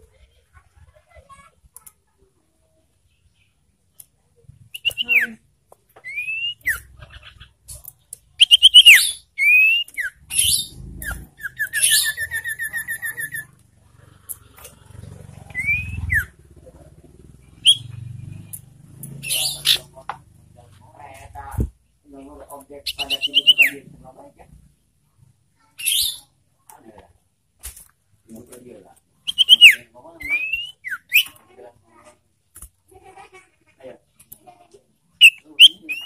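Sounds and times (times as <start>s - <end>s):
bird whistled calls: 6.0s - 6.9s, 8.4s - 13.4s, 15.5s - 16.3s, 17.6s - 18.0s, 22.9s - 23.8s, 29.3s - 31.4s, 35.2s - 36.0s
bird trill: 6.0s - 7.6s, 8.4s - 13.6s, 15.5s - 16.4s, 17.5s - 18.1s, 19.1s - 19.9s, 22.9s - 23.8s, 25.8s - 26.4s, 29.2s - 31.4s, 35.2s - 36.0s.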